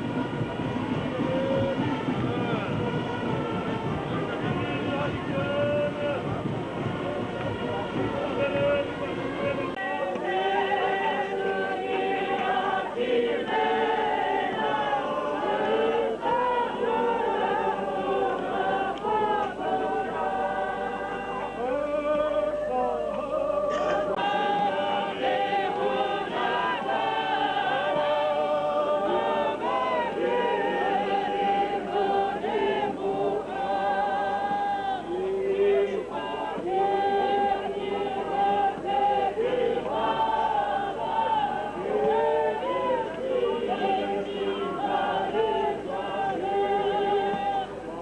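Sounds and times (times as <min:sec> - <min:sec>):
choir singing a hymn: 0:00.0 - 0:48.0.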